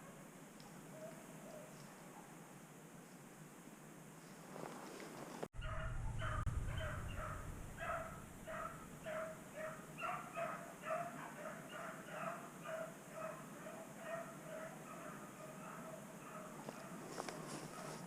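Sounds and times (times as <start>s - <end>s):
low rumble on microphone: 5.6s - 9.1s
dogs baying and yipping: 5.6s - 17.0s.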